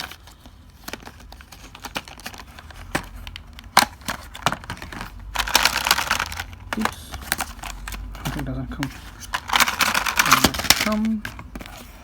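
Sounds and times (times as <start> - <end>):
plastic packaging crinkling: 0.0 - 12.0
plastic packaging clicks and taps: 0.8 - 8.5, 9.2 - 11.7.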